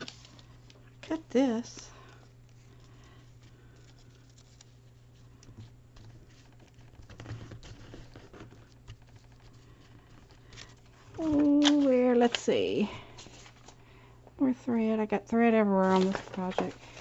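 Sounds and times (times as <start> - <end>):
low steady hum: 0.0 - 17.0
paper rustling: 2.0 - 13.8, 15.8 - 17.0.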